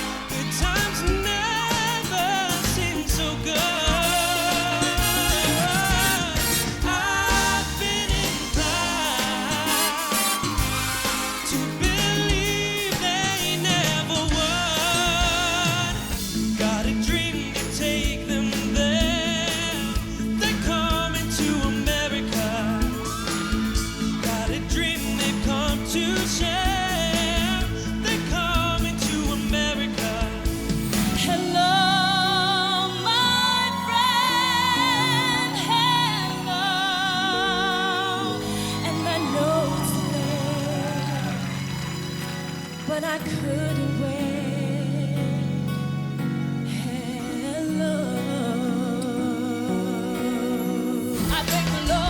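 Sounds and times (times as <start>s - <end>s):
drum beats: 0.0s - 31.9s, 37.6s - 43.3s, 51.1s - 52.0s
live rock band music: 0.0s - 52.0s.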